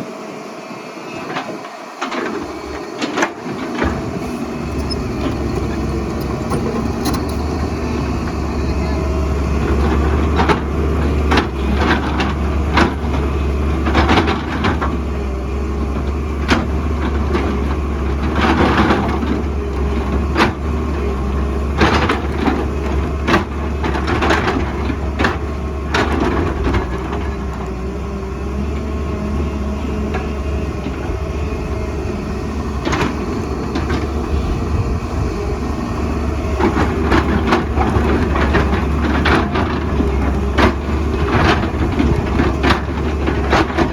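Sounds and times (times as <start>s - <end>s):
excavator diesel engine running: 0.0s - 43.9s.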